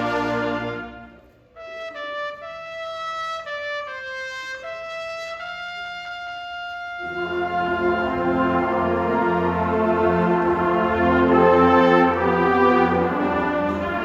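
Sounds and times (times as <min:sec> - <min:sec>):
marching band chord: 0:00.0 - 0:02.7, 0:06.3 - 0:14.0
solo trumpet melody: 0:00.0 - 0:14.0.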